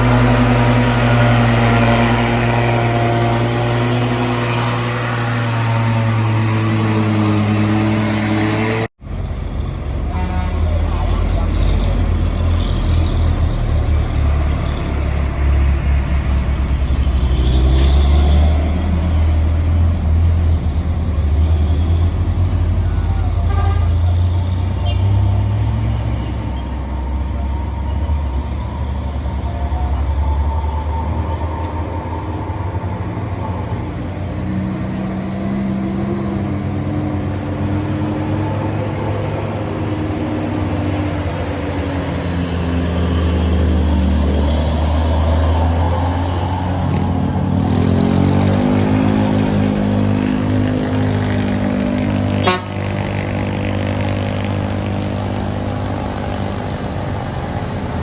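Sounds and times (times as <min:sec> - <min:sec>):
trucks passing with engine rumble: 0:00.0 - 0:58.0
multi-tone air horn tooting: 0:10.0 - 0:11.0, 0:23.1 - 0:24.2, 0:52.2 - 0:53.3.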